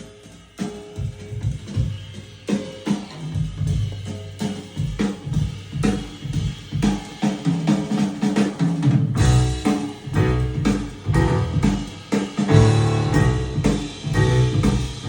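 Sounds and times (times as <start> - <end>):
drum kit beat: 0.0 - 15.0
jazz music through speakers: 0.0 - 15.0
bass: 3.3 - 6.8, 9.1 - 15.0.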